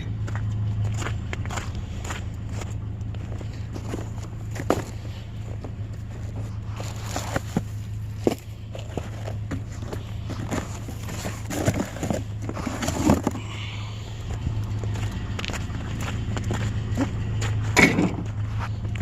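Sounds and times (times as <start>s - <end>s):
vehicle engine running: 0.0s - 19.0s
knocks and clatters: 14.8s - 19.0s.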